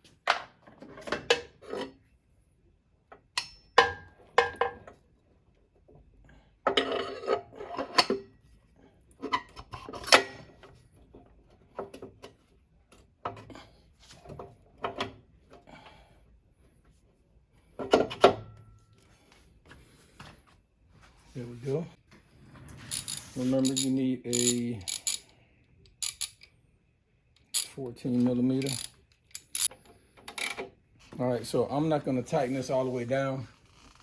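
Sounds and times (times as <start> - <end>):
metal clinks and scrapes: 22.9 - 25.3.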